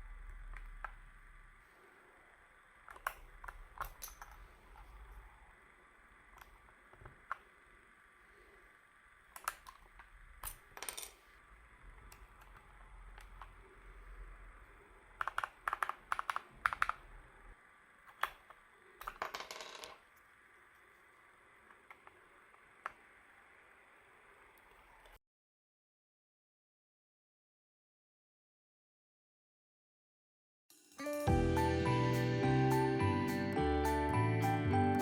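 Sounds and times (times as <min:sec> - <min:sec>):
keyboard keycaps clicking: 0:15.2 - 0:17.0.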